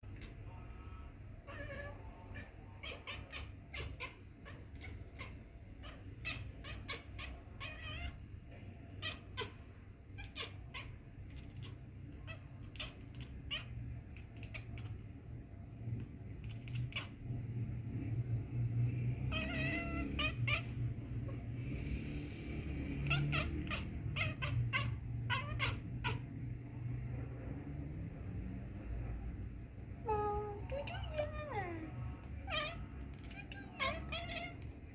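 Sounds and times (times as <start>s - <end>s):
steady low hum: 0.0s - 34.9s
cat meowing: 0.2s - 8.2s, 8.9s - 15.0s, 16.4s - 17.2s, 19.3s - 21.1s, 23.0s - 26.3s, 30.1s - 34.9s
cat chirping: 1.3s - 15.0s, 16.3s - 17.2s, 19.2s - 21.5s, 22.9s - 26.4s, 30.6s - 34.9s.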